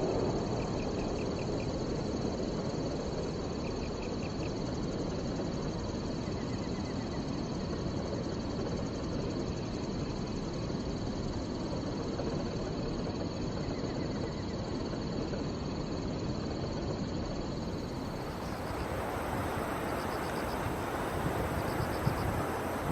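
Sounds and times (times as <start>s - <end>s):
faint chirps: 17.7s - 22.9s
low rushing water: 17.7s - 22.9s.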